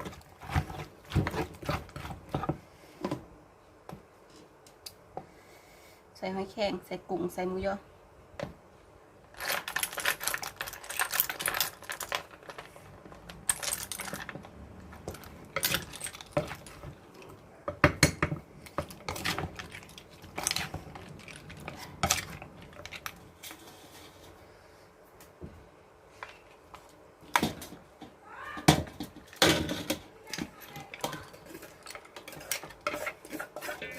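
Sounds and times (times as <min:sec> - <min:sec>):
pestle knocking in a mortar: 0:00.0 - 0:02.6.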